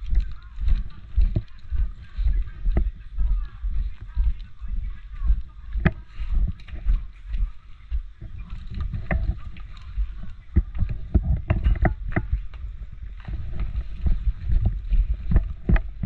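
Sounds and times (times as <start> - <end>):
wind buffeting microphone: 0.0 - 16.0
knocks and rustles of gear: 8.2 - 16.0.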